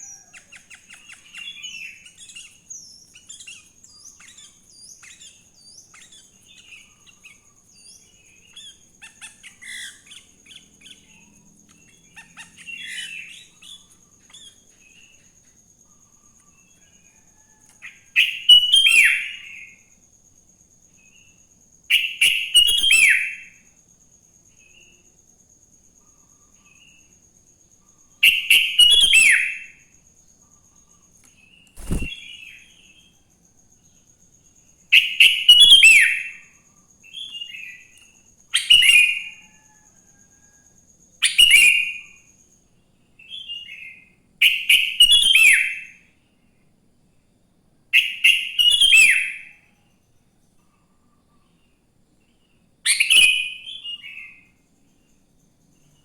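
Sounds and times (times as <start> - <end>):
soft bird chirps: 0.0 - 19.9, 25.8 - 46.0.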